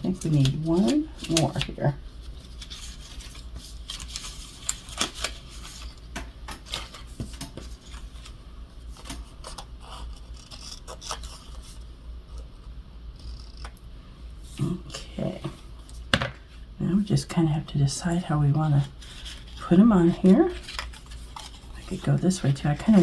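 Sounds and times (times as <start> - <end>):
steady low hum: 0.0 - 23.0
paper scraps rustling: 0.1 - 6.0, 18.8 - 23.0.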